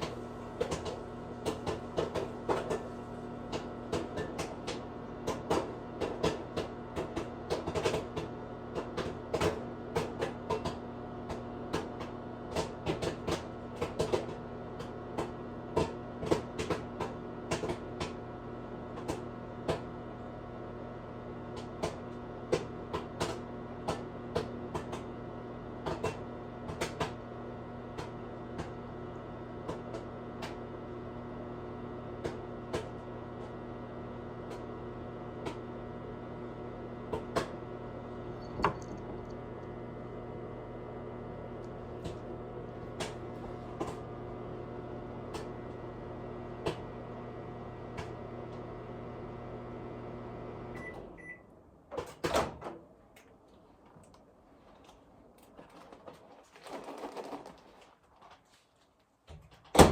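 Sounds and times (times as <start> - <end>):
popcorn popping: 0.0 - 18.2, 41.0 - 44.2
microwave oven humming: 0.0 - 57.9, 59.3 - 59.9
microwave beeps: 38.2 - 39.0, 50.7 - 51.5.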